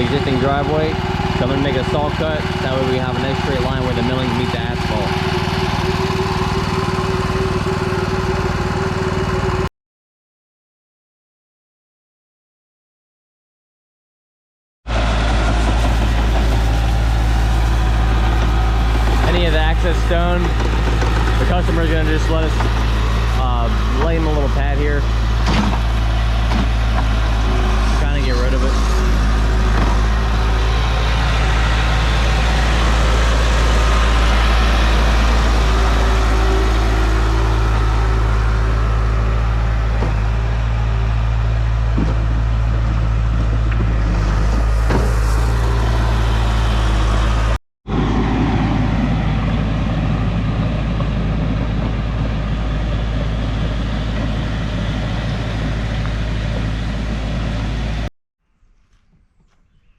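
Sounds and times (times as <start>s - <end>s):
diesel engine running under load: 0.0s - 9.7s, 14.9s - 58.1s.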